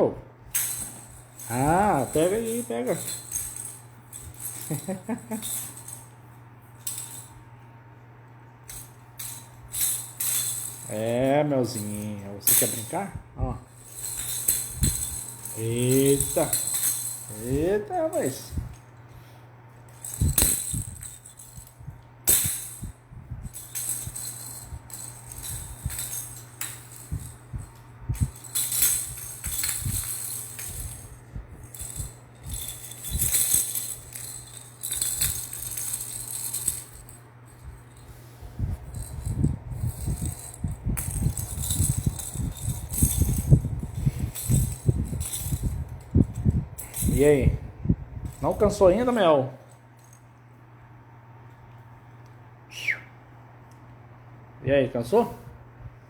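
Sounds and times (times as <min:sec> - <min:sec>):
toy rattle shaking: 0:00.5 - 0:06.2, 0:06.8 - 0:07.4, 0:08.7 - 0:18.8, 0:19.9 - 0:47.6.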